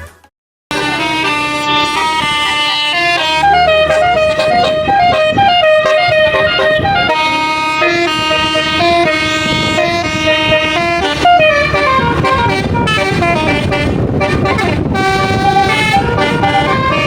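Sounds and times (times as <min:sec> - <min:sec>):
musical bus horn playing a tune: 0:00.7 - 0:17.0.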